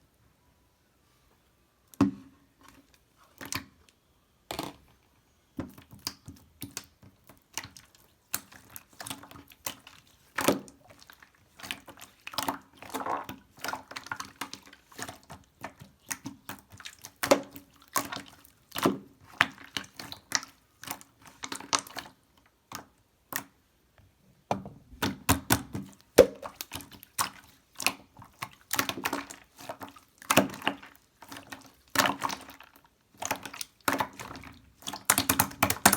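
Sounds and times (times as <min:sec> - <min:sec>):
slime squished by hand: 0:25.0 - 0:35.9.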